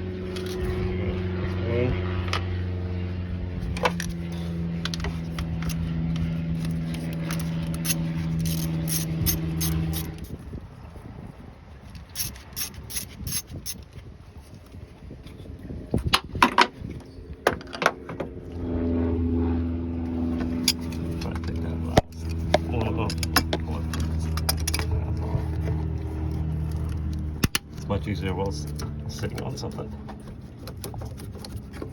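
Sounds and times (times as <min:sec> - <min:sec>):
mechanical hum: 0:00.0 - 0:31.9
ratchet wrench clicking: 0:07.3 - 0:10.2, 0:12.1 - 0:13.8.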